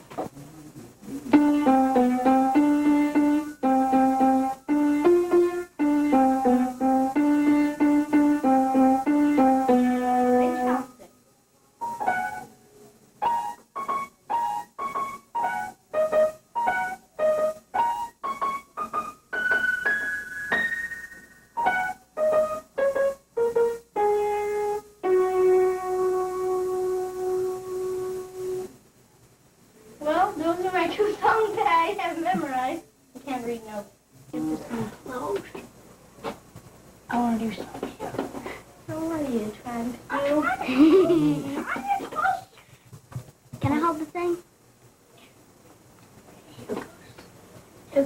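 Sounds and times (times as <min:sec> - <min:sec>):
piano chords: 0:01.3 - 0:11.0, 0:11.8 - 0:12.6, 0:13.2 - 0:28.8
piano melody of single notes: 0:01.3 - 0:11.0, 0:11.8 - 0:12.6, 0:13.2 - 0:28.8.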